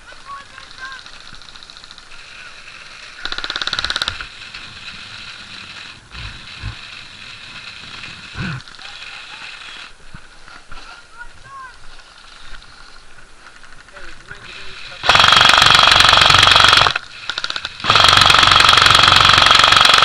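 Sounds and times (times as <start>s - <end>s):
airsoft gun full-auto burst: 2.9s - 7.8s, 15.0s - 20.0s.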